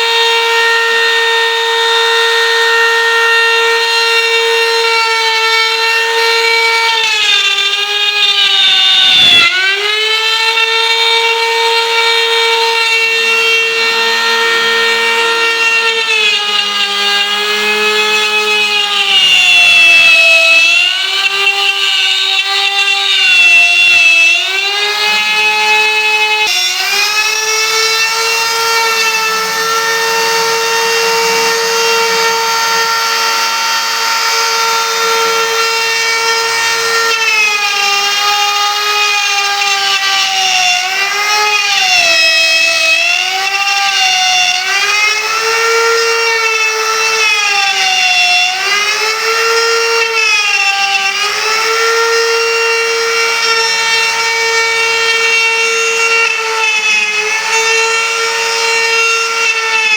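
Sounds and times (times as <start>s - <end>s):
wood router whining: 0.0s - 59.9s.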